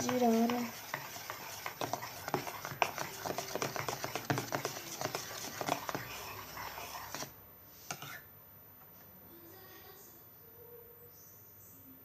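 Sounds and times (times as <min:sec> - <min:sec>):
spoon stirring slime in bowl: 0:00.0 - 0:08.2.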